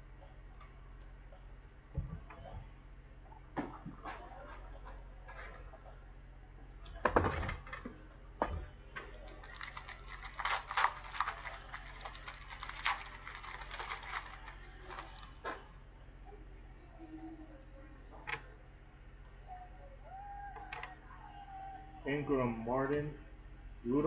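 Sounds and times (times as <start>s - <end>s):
card packaging crackling and rustling: 9.1s - 15.6s
packaging thumps: 9.2s - 15.6s.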